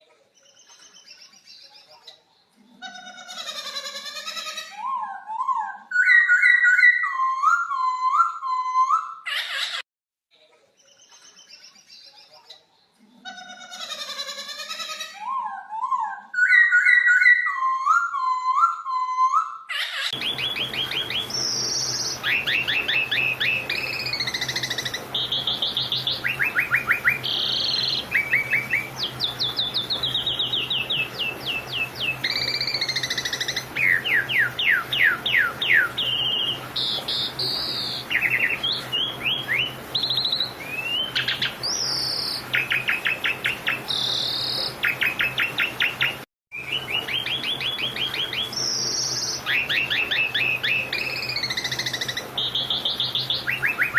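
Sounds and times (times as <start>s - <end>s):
songbird singing trills: 20.1s - 53.9s.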